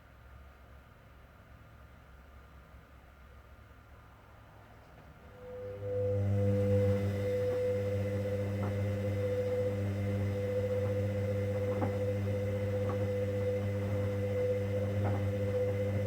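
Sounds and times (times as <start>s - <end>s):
washing machine motor humming: 5.5s - 16.0s
light ticks from tumbling load: 6.7s - 16.0s.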